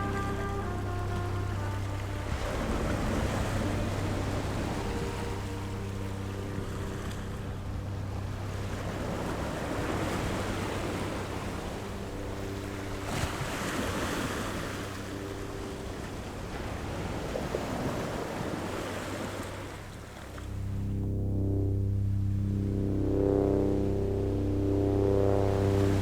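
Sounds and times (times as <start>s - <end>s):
ocean waves: 0.0s - 21.0s, 21.8s - 26.0s
faint low hum: 0.0s - 26.0s.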